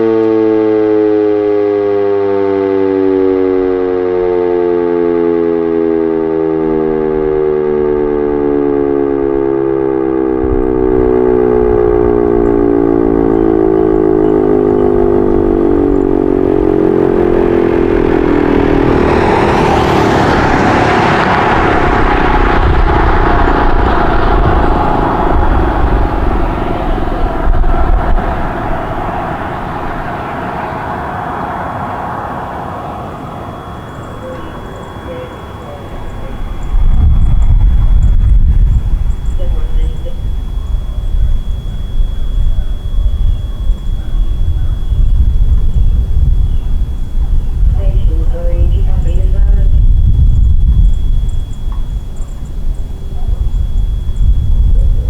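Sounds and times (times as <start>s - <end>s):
warning siren winding down: 0.0s - 55.0s
loud rushing noise: 10.9s - 42.1s.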